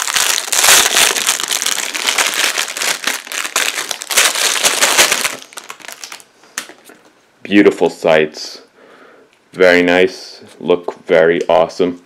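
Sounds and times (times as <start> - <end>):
plastic packaging crinkling: 0.0 - 7.1.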